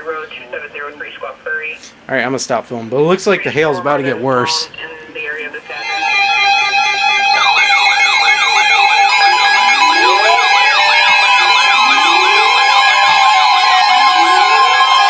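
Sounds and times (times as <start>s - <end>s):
emergency vehicle sirens: 3.9s - 15.0s.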